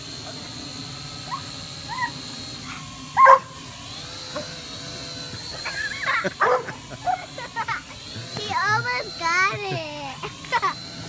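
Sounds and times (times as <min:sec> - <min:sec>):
drone whine: 0:00.0 - 0:11.0
dog yipping and barking: 0:01.3 - 0:03.6, 0:06.4 - 0:07.3.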